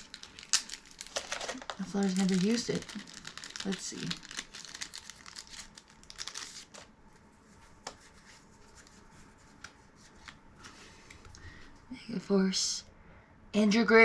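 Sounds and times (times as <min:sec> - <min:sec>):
clicks and rustles: 0:00.0 - 0:06.9
packaging crinkling and tearing: 0:00.0 - 0:06.9.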